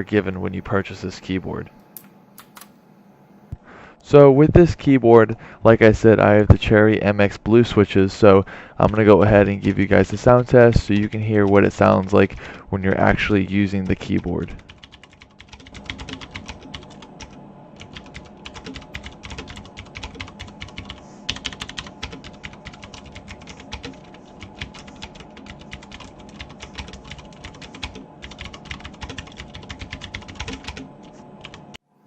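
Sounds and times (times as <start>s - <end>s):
clicky mechanical keyboard typing: 2.0s - 2.7s, 9.6s - 12.4s, 13.8s - 31.8s.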